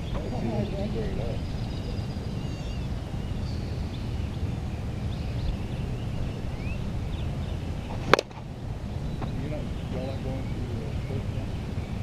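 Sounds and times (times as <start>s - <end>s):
faint bird chirps: 0.0s - 8.0s
low outdoor rumble: 0.0s - 12.0s.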